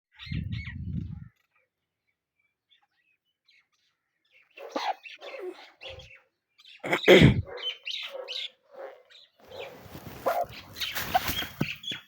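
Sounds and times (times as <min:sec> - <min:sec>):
chickens squawking harshly: 0:09.8 - 0:11.7.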